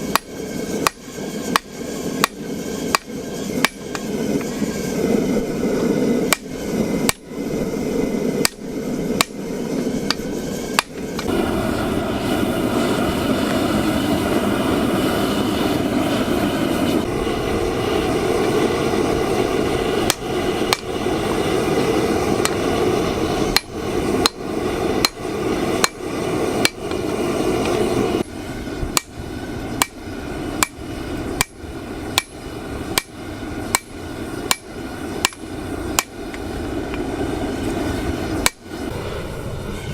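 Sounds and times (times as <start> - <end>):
hammer striking steel: 0.0 - 4.1, 6.3 - 6.5, 7.1 - 7.3, 8.4 - 8.6, 9.2 - 9.4, 10.1 - 11.3, 20.0 - 20.9, 23.5 - 26.0, 26.6 - 27.0, 28.9 - 29.2, 29.8 - 30.0, 30.6 - 30.8, 31.4 - 36.2, 38.4 - 38.6
continuous rushing noise: 0.0 - 39.9.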